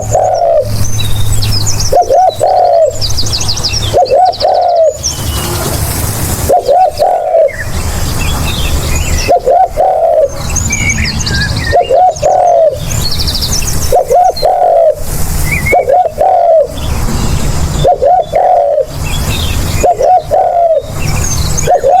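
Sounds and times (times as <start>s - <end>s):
dove cooing: 0.0s - 0.8s, 1.9s - 3.1s, 3.8s - 7.8s, 9.1s - 10.6s, 11.5s - 12.9s, 13.9s - 16.9s, 17.6s - 22.0s
small birds chirping: 0.0s - 22.0s.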